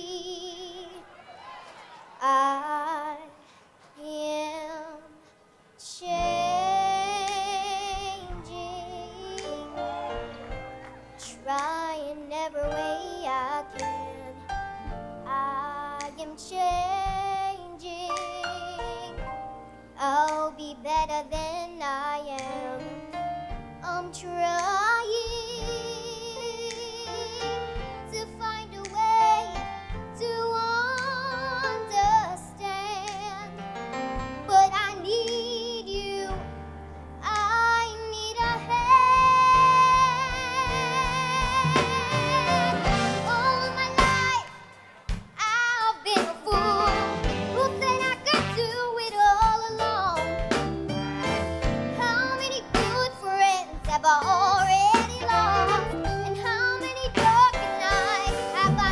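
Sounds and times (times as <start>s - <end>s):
girl singing with vibrato: 0.0s - 1.2s, 2.2s - 10.5s, 11.2s - 19.4s, 20.0s - 23.1s, 23.8s - 33.6s, 34.4s - 36.6s, 37.2s - 58.9s
instrumental accompaniment: 6.3s - 21.7s, 22.4s - 58.9s.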